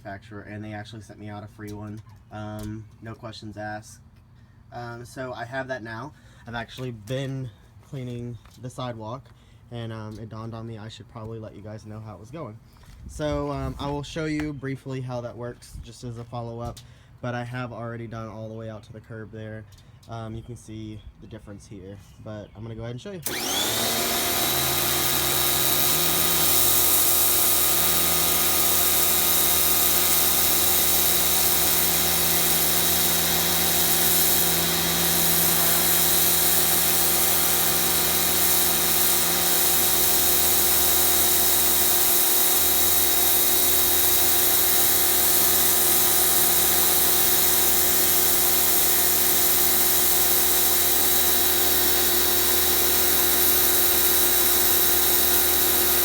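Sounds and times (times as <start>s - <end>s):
pressure washer motor humming: 23.2s - 56.0s.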